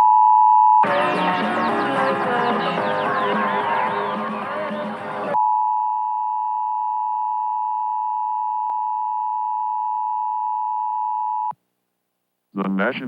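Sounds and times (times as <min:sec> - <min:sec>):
music: 0:00.8 - 0:05.4.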